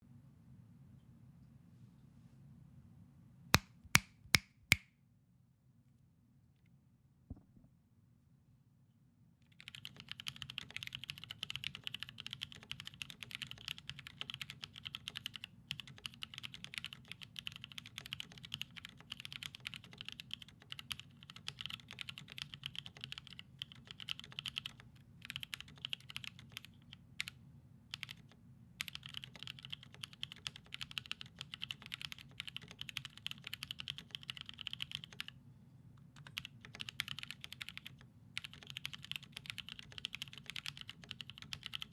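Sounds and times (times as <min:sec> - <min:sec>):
mechanical keyboard typing: 0:09.6 - 0:35.3, 0:36.1 - 0:41.9.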